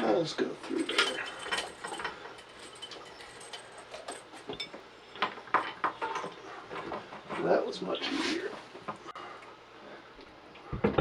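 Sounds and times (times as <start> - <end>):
metal parts clicking and clinking: 0.6 - 6.9.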